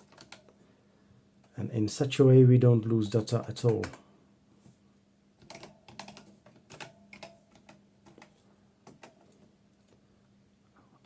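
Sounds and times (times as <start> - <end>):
faint keyboard typing: 0.0 - 0.6, 3.1 - 4.1, 5.4 - 10.0.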